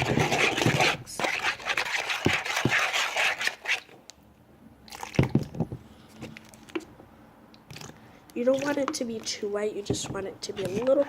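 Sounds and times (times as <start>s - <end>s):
liquid swishing in a bowl: 0.0s - 3.9s, 7.6s - 11.0s.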